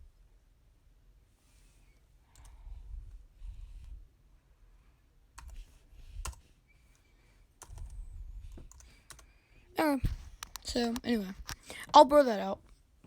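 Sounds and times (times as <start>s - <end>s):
clicks and taps on tablet keyboard: 10.0s - 12.0s.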